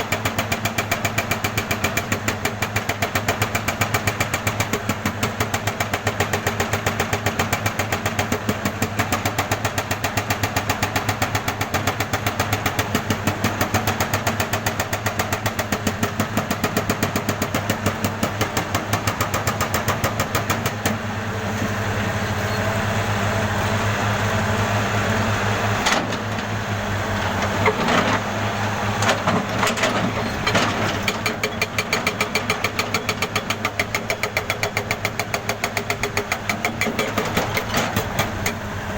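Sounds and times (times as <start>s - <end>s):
jackhammer hammering: 30.6s - 38.6s.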